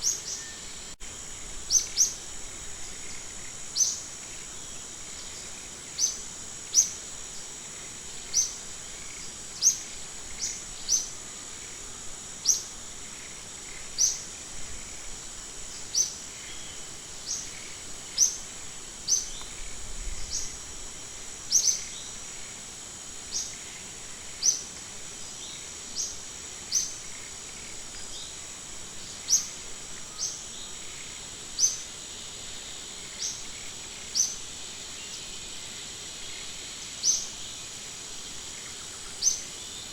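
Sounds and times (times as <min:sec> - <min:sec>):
high-pitched insect drone: 0:00.0 - 0:39.9.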